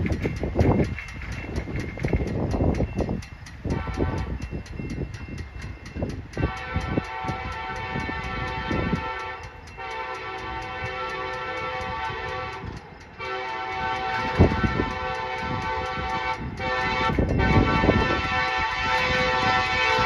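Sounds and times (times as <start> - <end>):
wind buffeting microphone: 0.0 - 20.0
locomotive horn blasts: 3.7 - 4.4, 6.4 - 20.0.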